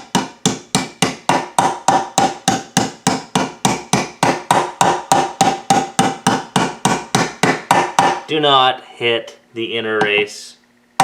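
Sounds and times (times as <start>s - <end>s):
hammer tapping metal: 0.0s - 8.3s.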